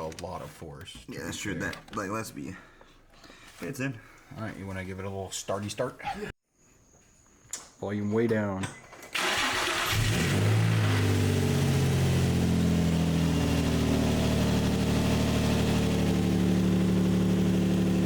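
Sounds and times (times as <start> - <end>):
car engine starting and idling: 9.2 - 18.0.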